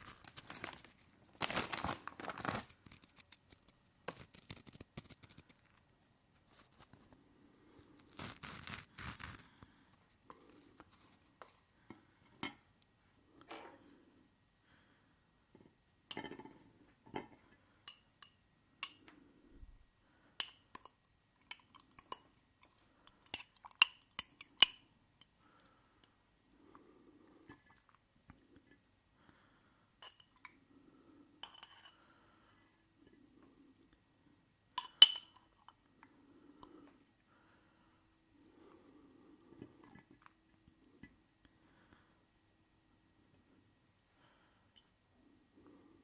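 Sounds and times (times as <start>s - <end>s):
soft chewing: 20.5s - 25.8s, 35.4s - 41.2s.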